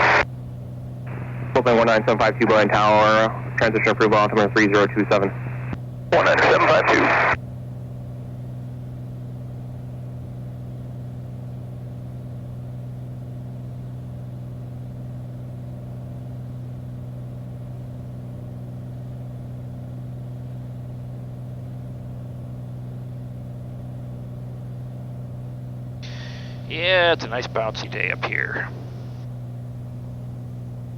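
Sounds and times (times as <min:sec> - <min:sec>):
light airplane engine droning: 0:00.0 - 0:30.9.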